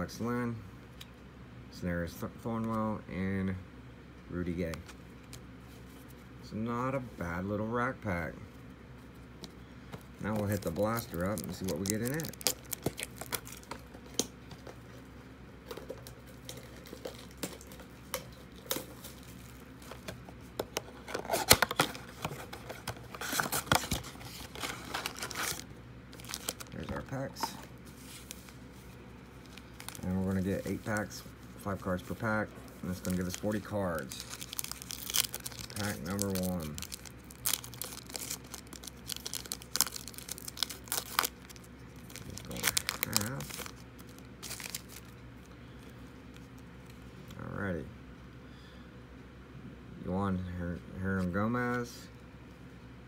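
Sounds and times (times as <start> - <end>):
plastic wrapping tearing and crinkling: 10.2 - 14.3, 16.4 - 17.8, 21.1 - 28.5, 29.4 - 31.2, 32.8 - 45.2.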